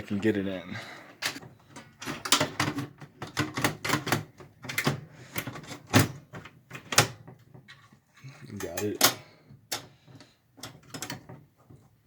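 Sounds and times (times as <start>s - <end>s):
metal housing clicks and knocks: 1.2s - 7.9s.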